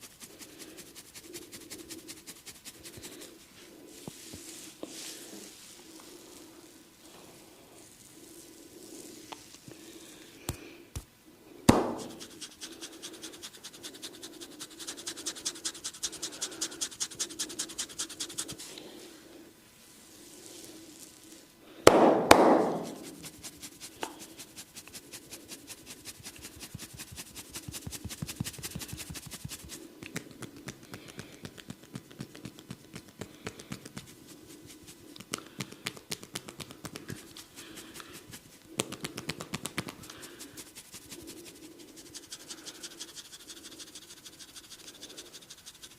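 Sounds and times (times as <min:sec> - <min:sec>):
loud hand smacks: 0:11.7 - 0:12.2, 0:21.9 - 0:23.0
rhythmic hand strikes on body: 0:11.7 - 0:12.7, 0:21.9 - 0:23.3, 0:27.0 - 0:41.1.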